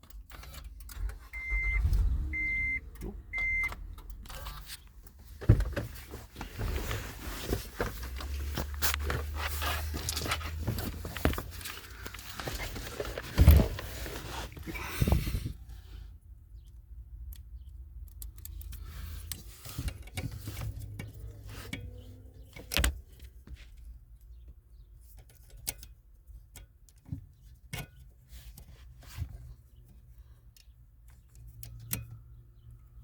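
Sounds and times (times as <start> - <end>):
clicks and clatter of handling: 3.8 - 14.8.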